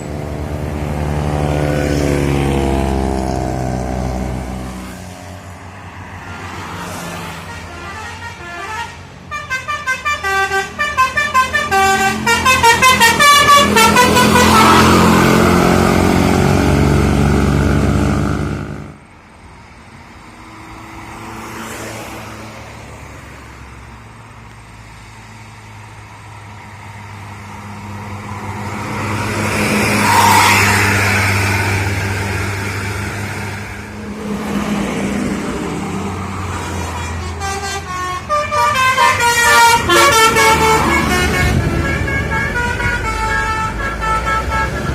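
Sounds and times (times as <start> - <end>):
bus engine running loudly: 0.0 - 6.8, 7.4 - 20.6, 22.6 - 44.9
heavy vehicle engine: 0.0 - 44.9
bus horn playing a tune: 6.7 - 19.0, 28.6 - 33.6, 36.6 - 44.9.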